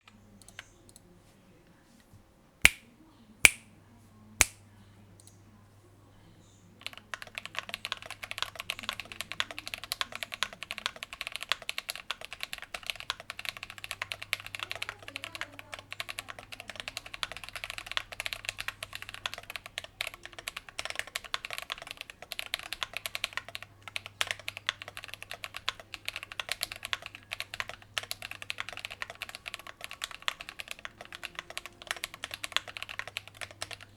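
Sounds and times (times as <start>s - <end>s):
sharp loud clicks: 2.6s - 3.7s, 4.4s - 4.6s
mechanical keyboard typing: 6.8s - 33.9s.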